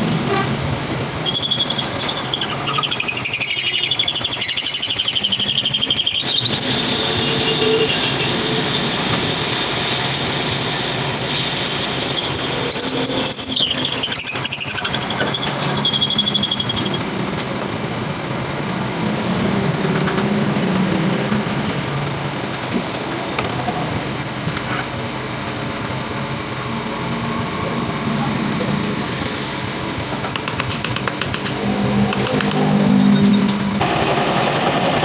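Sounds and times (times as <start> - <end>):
metal lathe running: 0.0 - 17.4, 18.6 - 35.0
cutting tool squealing: 1.2 - 17.0.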